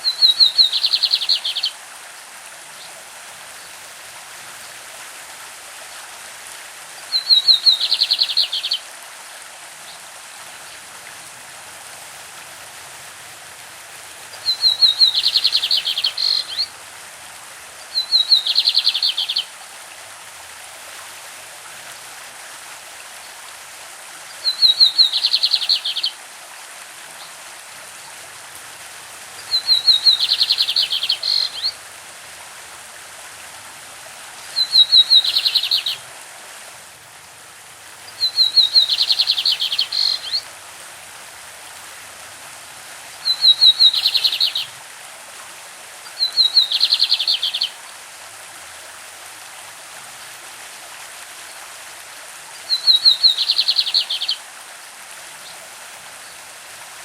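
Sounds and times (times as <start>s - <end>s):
stream rushing: 0.0s - 57.0s
bird singing with trills: 0.1s - 1.7s, 7.2s - 8.8s, 14.5s - 16.7s, 18.0s - 19.5s, 24.5s - 26.1s, 29.5s - 31.7s, 34.6s - 36.0s, 38.2s - 40.4s, 43.3s - 44.7s, 46.2s - 47.7s, 52.7s - 54.4s.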